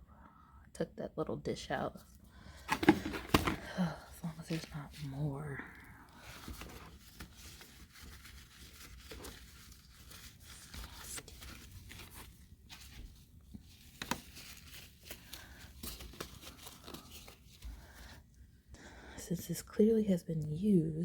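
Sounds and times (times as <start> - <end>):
plastic parts being handled: 2.5 - 5.0, 6.0 - 18.2
plastic packaging crinkling: 2.5 - 18.2.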